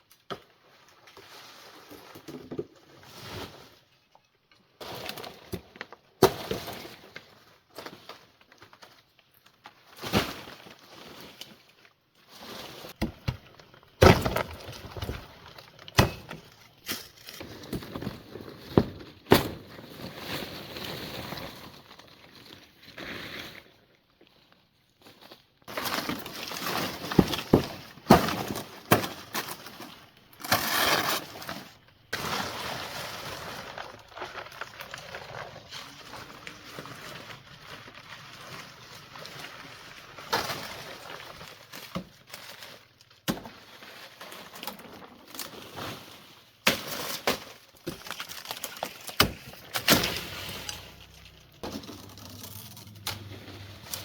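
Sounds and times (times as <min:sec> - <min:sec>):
scraping and clattering: 0:47.9 - 0:54.0
knocks and crashes: 0:48.7 - 0:54.0.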